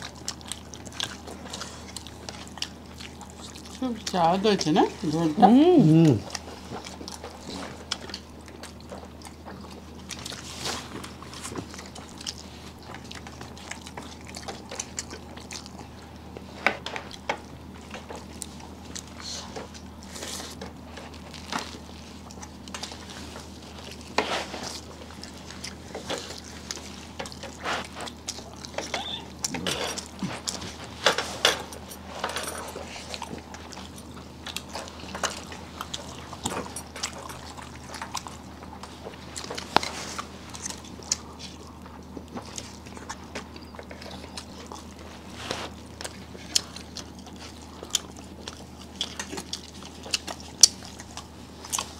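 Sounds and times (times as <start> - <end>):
wet chewing and lip smacks: 0.0 - 5.2, 6.2 - 30.8, 32.7 - 51.9
steady low hum: 0.0 - 51.9.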